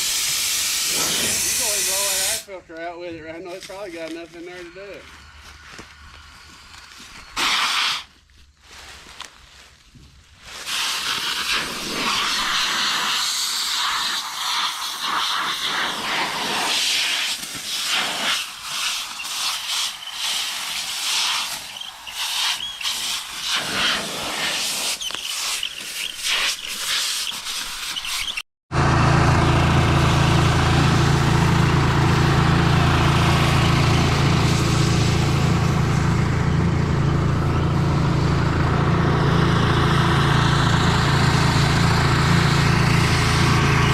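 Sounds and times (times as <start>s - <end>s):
compressed air hissing: 0.0s - 2.6s, 7.3s - 8.2s, 10.5s - 28.4s
farm machine engine running: 28.7s - 43.9s.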